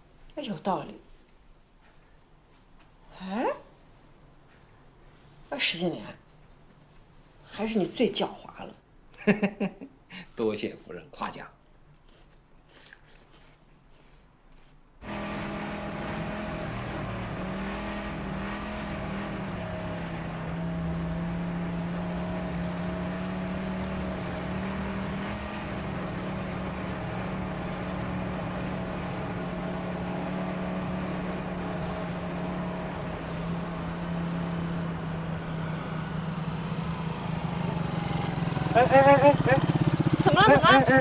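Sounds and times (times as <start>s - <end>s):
motorcycle engine running: 15.0s - 41.0s.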